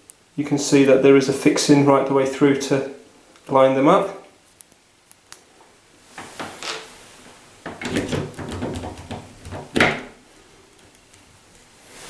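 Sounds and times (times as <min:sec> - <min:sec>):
metal door handle clicks: 0:07.7 - 0:10.1
metal door handle rattling: 0:07.7 - 0:10.2.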